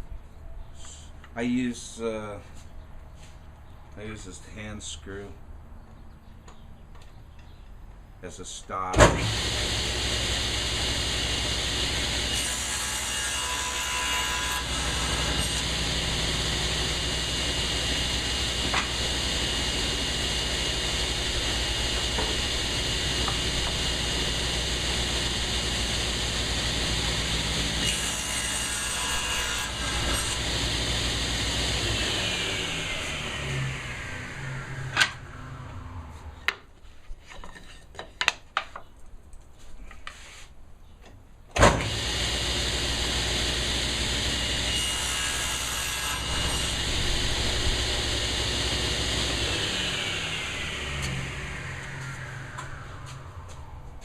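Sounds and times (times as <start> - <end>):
saw winding down whine: 9.2 - 36.5, 41.8 - 54.0
table saw cutting board: 9.2 - 36.6, 41.7 - 53.8.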